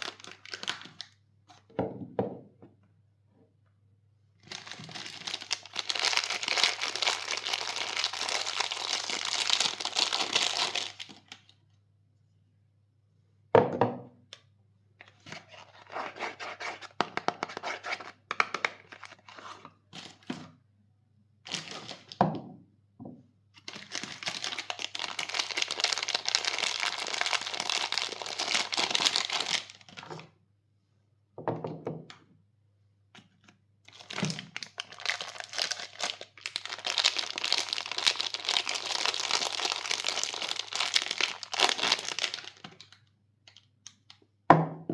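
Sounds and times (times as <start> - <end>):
wrappers tearing and crinkling: 0.0 - 1.1, 4.4 - 11.4, 23.6 - 30.1, 33.9 - 43.0.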